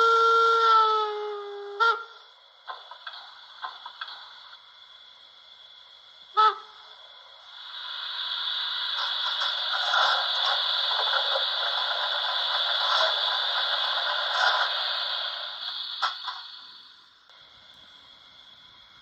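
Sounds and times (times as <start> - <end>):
model train rolling on track: 0.0 - 17.1.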